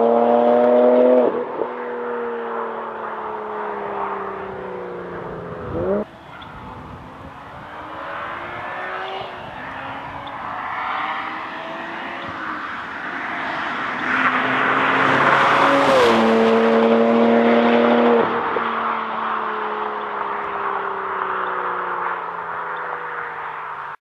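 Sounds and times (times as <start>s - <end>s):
car engine accelerating: 0.0s - 23.7s
car passing by: 3.7s - 22.5s.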